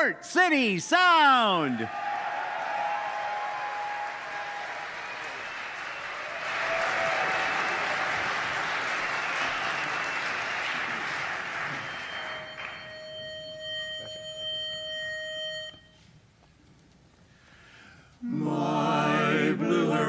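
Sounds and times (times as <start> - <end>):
audience applauding: 1.8 - 13.3.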